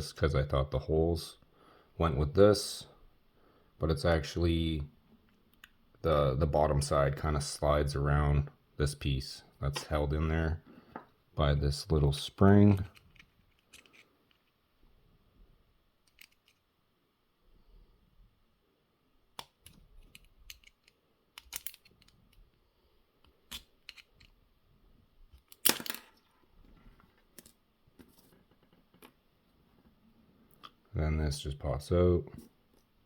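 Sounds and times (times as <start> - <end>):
small clicks and taps of parts: 12.7 - 14.6, 16.0 - 16.6, 19.4 - 22.6, 23.2 - 24.4.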